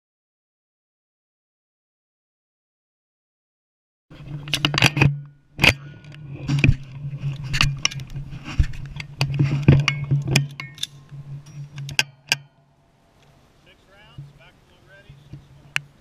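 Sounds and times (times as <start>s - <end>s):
steady low hum: 4.1s - 16.0s.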